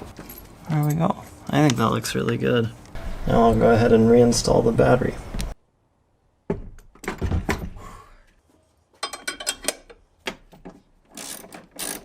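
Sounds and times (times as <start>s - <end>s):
metallic clicks and knocks: 9.0s - 12.0s.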